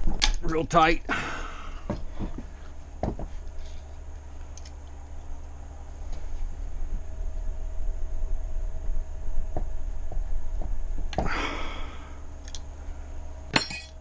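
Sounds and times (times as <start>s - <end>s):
steady low hum: 0.0s - 14.0s
metal tools clinking: 13.5s - 14.0s.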